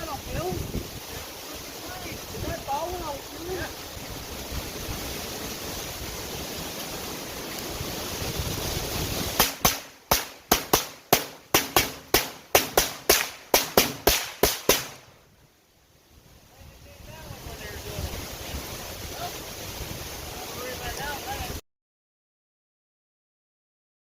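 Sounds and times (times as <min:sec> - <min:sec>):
wind on microphone: 0:00.0 - 0:09.8, 0:16.1 - 0:21.6
rapid gunshots with echo: 0:09.4 - 0:15.0.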